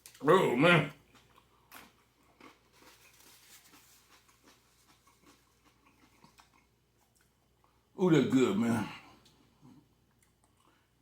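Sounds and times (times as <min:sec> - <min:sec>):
faint chewing: 0:00.9 - 0:07.9, 0:09.2 - 0:11.0.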